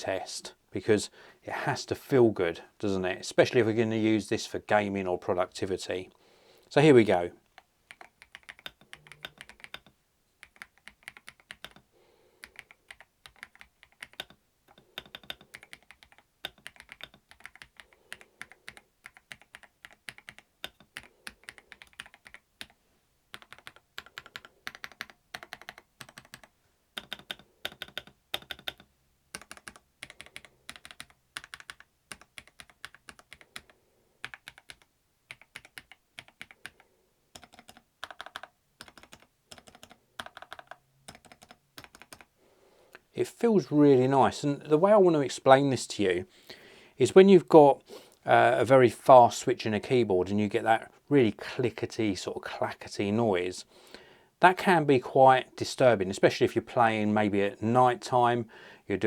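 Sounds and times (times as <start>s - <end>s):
mechanical keyboard typing: 7.9s - 36.8s, 37.4s - 42.3s.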